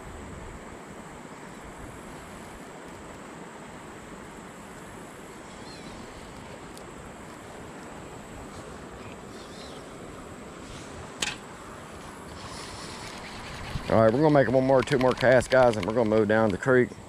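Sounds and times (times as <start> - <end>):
creek water rushing: 0.0 - 17.0
faint high chirps: 5.5 - 6.3.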